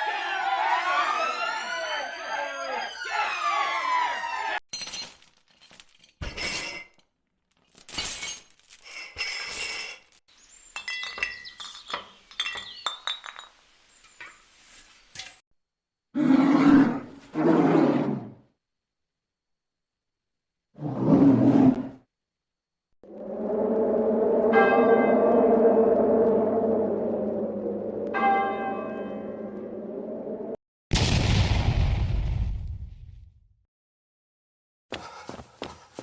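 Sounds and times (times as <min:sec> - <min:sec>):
wailing siren: 0:00.0 - 0:04.6, 0:23.0 - 0:30.6.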